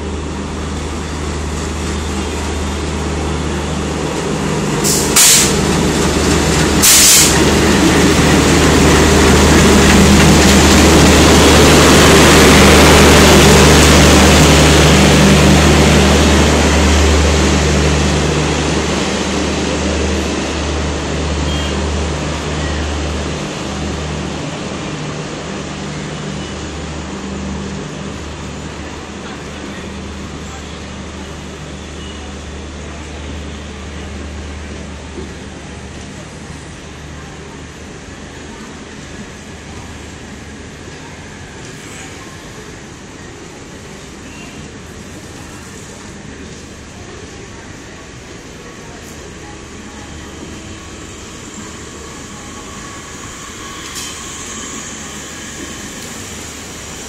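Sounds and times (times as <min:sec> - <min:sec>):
diesel locomotive engine drone: 0:00.0 - 0:57.0
train rail rumble: 0:00.0 - 0:57.0
air hissing: 0:04.8 - 0:05.6, 0:06.8 - 0:07.5.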